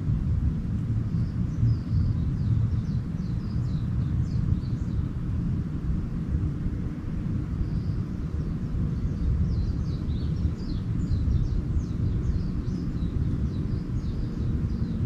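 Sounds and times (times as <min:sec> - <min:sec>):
steady low rumble: 0:00.0 - 0:15.0
small birds twittering: 0:00.8 - 0:15.0.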